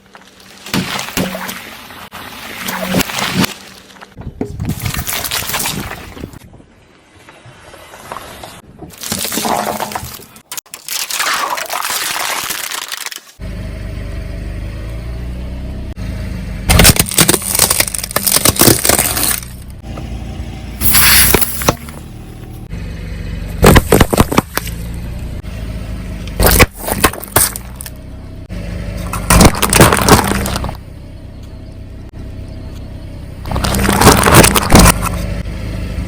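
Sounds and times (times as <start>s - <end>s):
tyre crushing objects: 0.0s - 6.4s, 8.9s - 13.2s, 16.7s - 19.6s, 23.6s - 24.8s, 26.4s - 27.9s, 29.0s - 30.8s, 33.5s - 35.2s.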